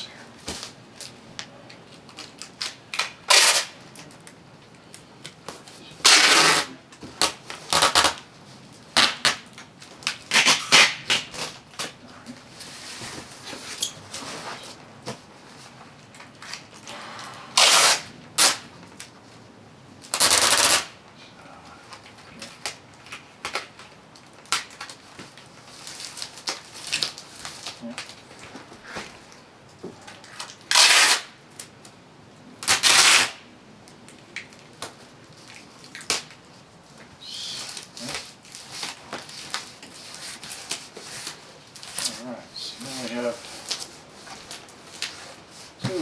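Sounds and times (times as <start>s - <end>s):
packing tape ripping off roll: 2.0s - 4.4s, 5.2s - 14.8s, 16.1s - 19.1s, 20.0s - 21.0s, 21.9s - 28.2s, 30.2s - 31.8s, 32.6s - 36.6s, 37.4s - 46.0s.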